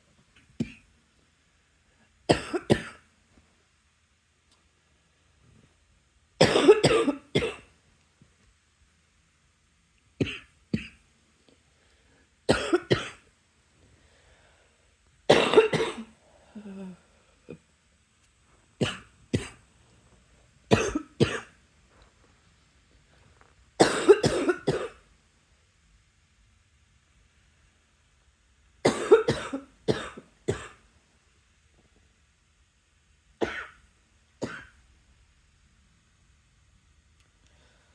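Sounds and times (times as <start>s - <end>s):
person coughing: 2.3s - 3.0s, 6.4s - 7.7s, 12.5s - 13.2s, 15.3s - 17.6s, 20.7s - 21.6s, 23.8s - 25.0s, 28.8s - 30.8s, 33.4s - 33.8s.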